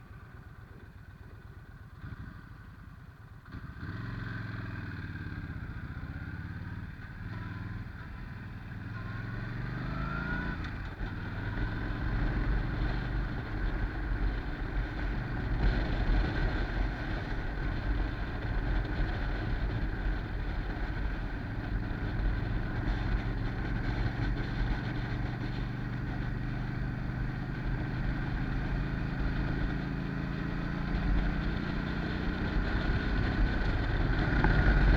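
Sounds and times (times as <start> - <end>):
motorcycle engine running: 0.0 - 34.9
wind rumble on microphone: 10.2 - 34.9.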